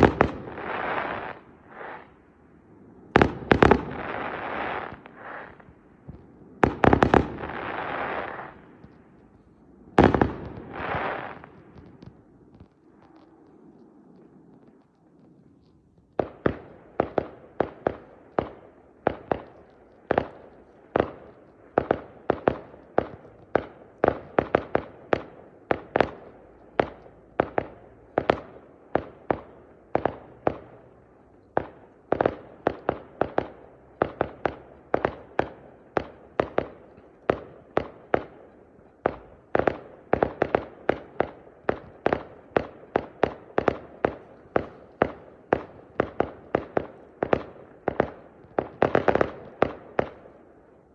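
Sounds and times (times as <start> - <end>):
fireworks bangs: 0.0 - 2.2, 3.2 - 9.2, 9.9 - 13.3.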